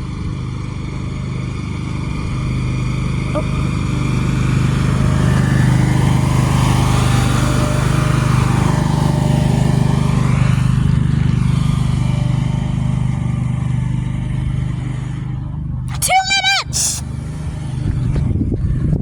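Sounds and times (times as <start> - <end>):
engine humming steadily: 0.8 - 15.9.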